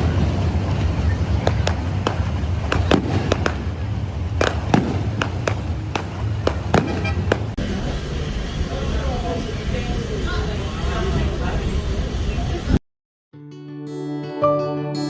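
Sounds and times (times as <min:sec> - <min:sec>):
firework shells banging: 0:01.4 - 0:07.6.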